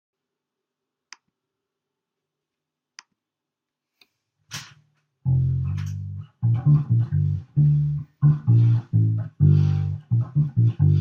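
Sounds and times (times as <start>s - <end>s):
electric bass guitar note: 5.3s - 11.0s.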